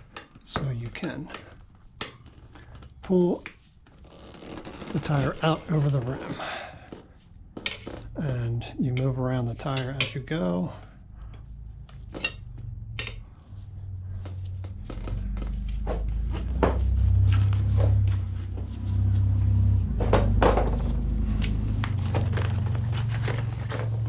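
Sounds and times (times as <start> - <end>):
tire irons scraping wheel rim: 0.6 - 11.0, 21.5 - 24.0
low rumble: 12.5 - 24.0.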